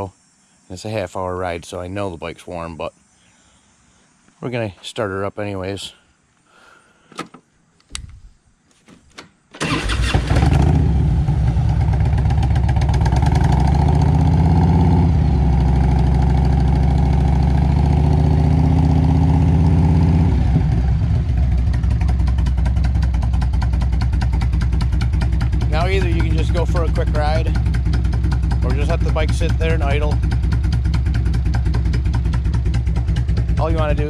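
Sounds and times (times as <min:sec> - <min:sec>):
clicks: 0:07.1 - 0:09.6
motorcycle starter cranking: 0:09.0 - 0:10.8
motorcycle engine idling: 0:09.6 - 0:34.0.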